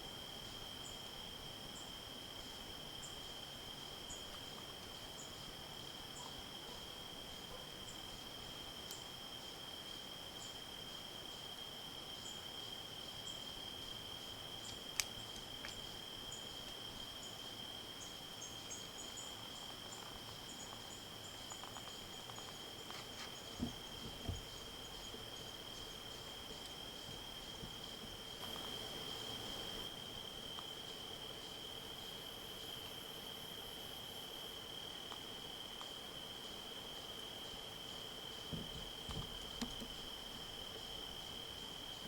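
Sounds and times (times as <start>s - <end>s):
insects droning: 0.0s - 42.0s
soft low thumps: 23.4s - 24.8s.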